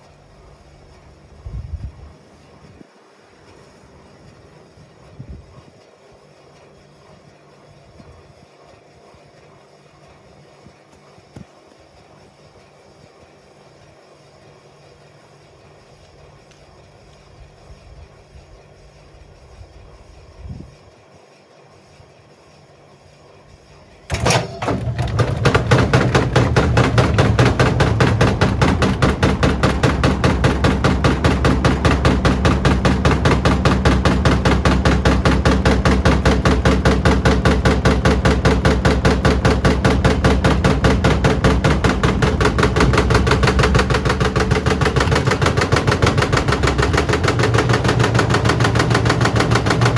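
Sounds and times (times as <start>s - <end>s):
washing machine drum spinning: 24.1s - 49.9s.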